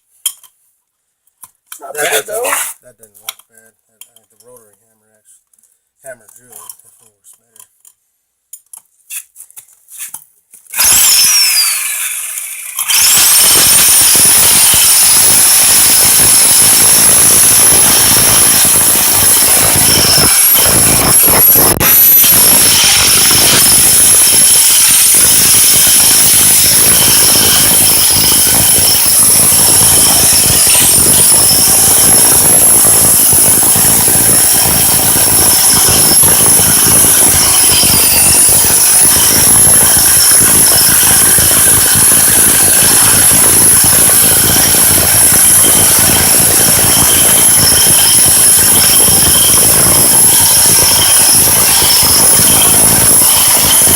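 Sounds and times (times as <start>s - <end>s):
rotary hammer drilling concrete: 10.7s - 53.9s.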